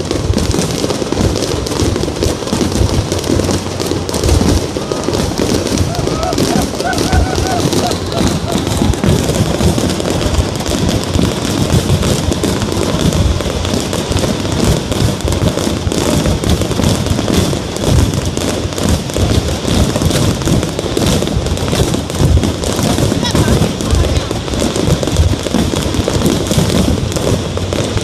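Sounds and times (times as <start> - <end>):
fireworks bangs and crackles: 0.0 - 28.0.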